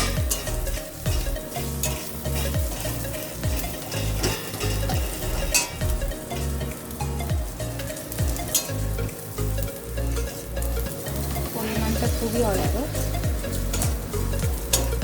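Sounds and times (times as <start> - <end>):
spatula scraping a pan: 0.0 - 8.9
seeds sizzling in a pan: 0.0 - 15.0.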